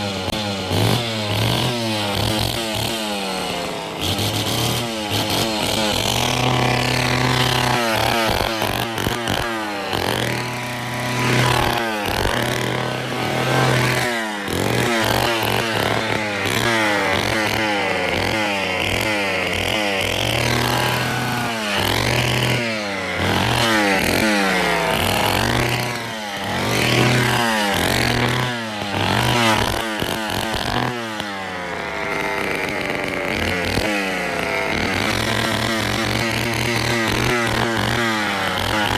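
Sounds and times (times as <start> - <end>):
chainsaw revving and idling: 0.0 - 38.9.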